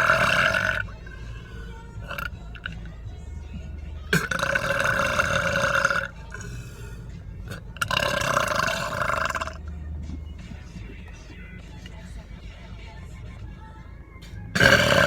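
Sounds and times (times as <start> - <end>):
person belching: 0.0 - 2.7, 4.1 - 9.7, 14.6 - 15.0.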